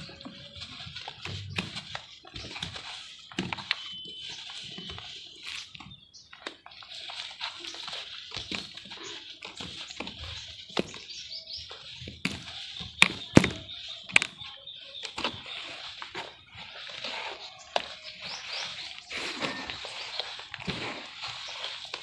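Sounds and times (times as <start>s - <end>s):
birds chirping: 0.0s - 22.0s
cement shapes crumbling and cracking: 12.2s - 14.5s.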